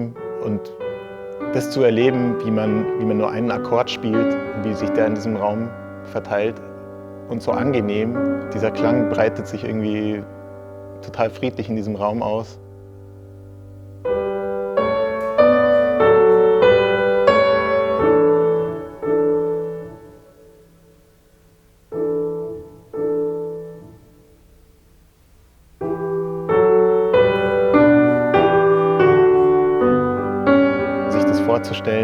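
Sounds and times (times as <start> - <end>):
piano playing slow chords: 0.0 - 32.0.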